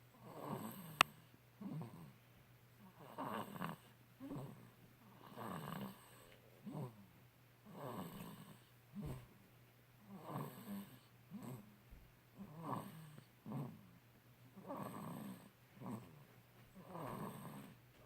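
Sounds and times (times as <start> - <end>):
baby snoring: 0.2 - 2.1, 2.8 - 9.3, 10.0 - 11.7, 12.4 - 13.9, 14.6 - 16.2, 16.8 - 17.8.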